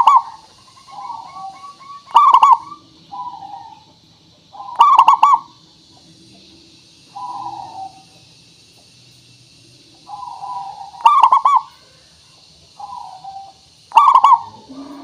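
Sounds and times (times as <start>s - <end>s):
dove cooing: 0.0s - 5.6s, 7.1s - 8.3s, 10.0s - 11.9s, 12.7s - 15.0s.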